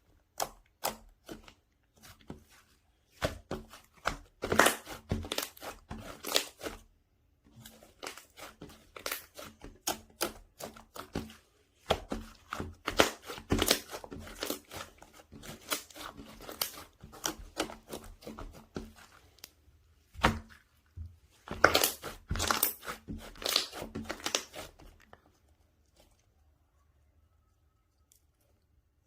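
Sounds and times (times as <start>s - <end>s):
slime crackling and popping: 4.3s - 6.7s, 7.8s - 11.2s, 11.8s - 18.6s, 21.5s - 24.8s.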